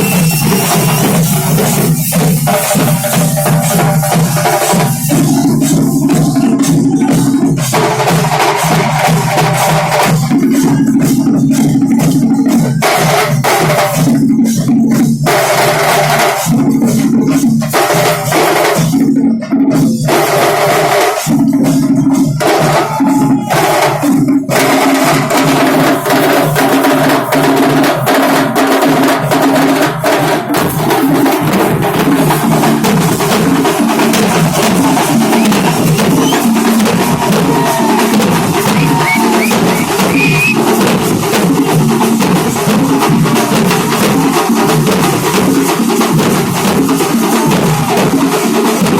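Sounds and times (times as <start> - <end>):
fast festival drumming: 0.0 - 48.9.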